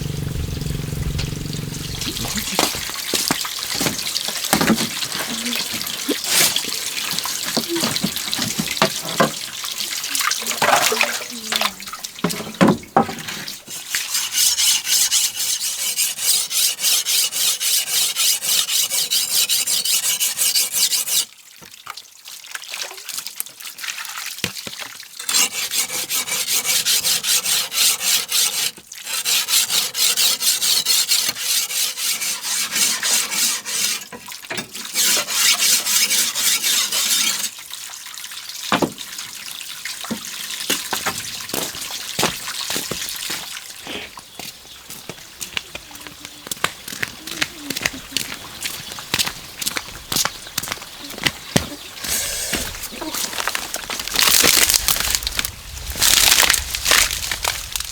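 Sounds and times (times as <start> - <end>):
water splashing: 0.0 - 13.7, 46.8 - 57.9.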